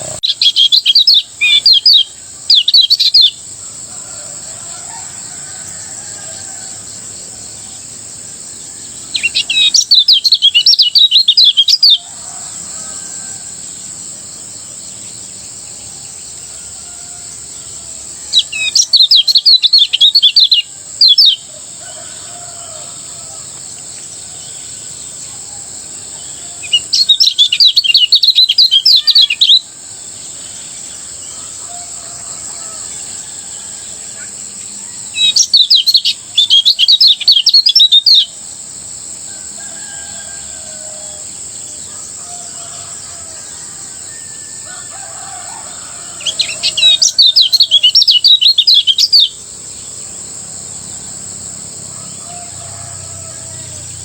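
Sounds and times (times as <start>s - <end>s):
bird twittering rapidly: 0.0s - 3.5s, 8.6s - 13.2s, 18.2s - 24.1s, 26.3s - 29.7s, 34.0s - 38.4s, 45.8s - 49.4s.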